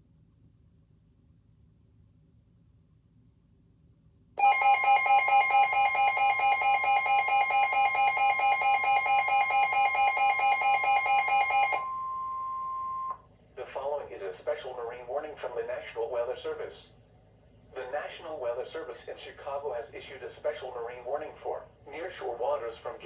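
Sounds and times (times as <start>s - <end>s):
pulsing electronic alarm: 4.4s - 13.2s
steady warning tone: 4.4s - 13.2s.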